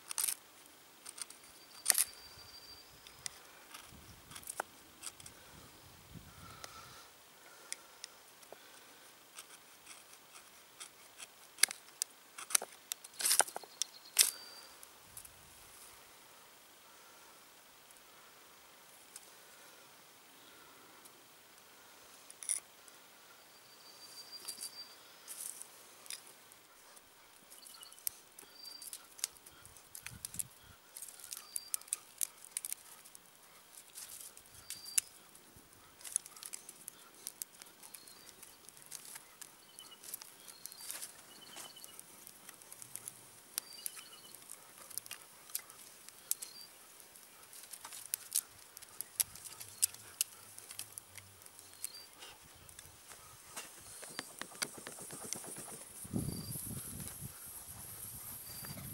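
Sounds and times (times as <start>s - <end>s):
dry wood crackling: 0.0s - 2.4s, 3.0s - 5.7s, 6.4s - 16.0s, 24.3s - 58.9s
bird chirping: 1.4s - 3.4s, 13.0s - 14.8s, 23.3s - 25.2s, 27.4s - 33.0s, 34.2s - 42.3s, 43.0s - 58.9s.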